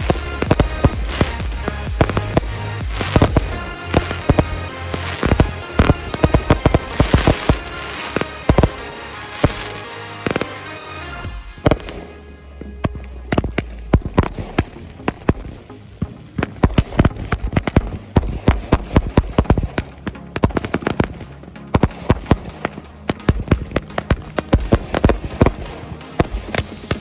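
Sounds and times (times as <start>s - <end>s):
fireworks cracking and popping: 0.0s - 21.2s, 21.8s - 27.0s.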